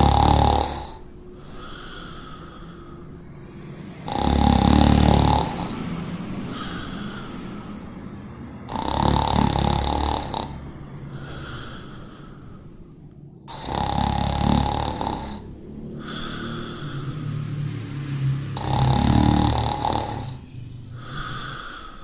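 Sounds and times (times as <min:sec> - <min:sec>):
dog snoring: 0:00.0 - 0:12.7, 0:13.4 - 0:22.0.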